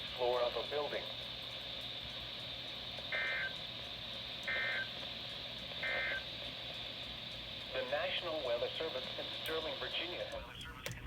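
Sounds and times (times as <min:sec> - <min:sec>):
radio hiss: 0:00.0 - 0:01.2, 0:04.5 - 0:06.7, 0:07.6 - 0:11.0.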